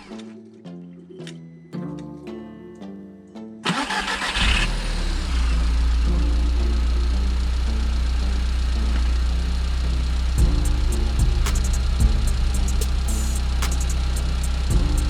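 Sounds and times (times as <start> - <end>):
car engine starter cranking: 3.6 - 6.0
car engine idling: 3.8 - 15.0.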